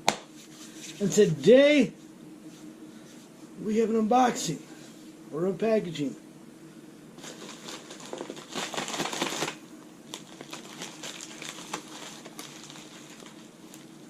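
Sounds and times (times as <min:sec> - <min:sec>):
packaging crinkling: 0:07.2 - 0:14.0.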